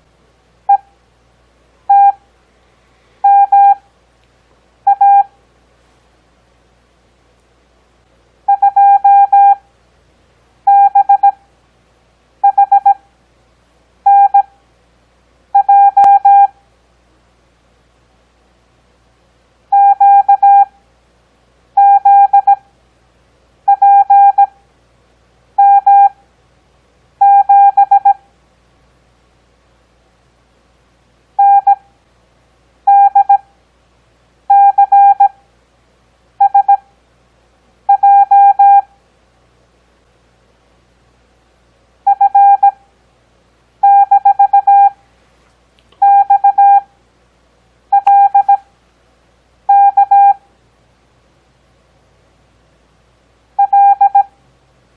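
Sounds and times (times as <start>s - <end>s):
morse code beeps: 1.9s - 2.2s, 3.2s - 3.8s, 4.9s - 5.3s, 8.5s - 9.6s, 10.7s - 11.4s, 12.4s - 13.0s, 14.1s - 14.5s, 15.6s - 16.5s, 19.7s - 20.7s, 21.8s - 22.6s, 23.7s - 24.5s, 25.6s - 26.2s, 27.2s - 28.2s, 31.4s - 31.8s, 32.9s - 33.4s, 34.5s - 35.3s, 36.4s - 36.8s, 37.9s - 38.9s, 42.1s - 42.8s, 43.8s - 45.0s, 46.0s - 46.9s, 47.9s - 48.6s, 49.7s - 50.4s, 53.6s - 54.3s
faint click: 45.5s - 46.0s.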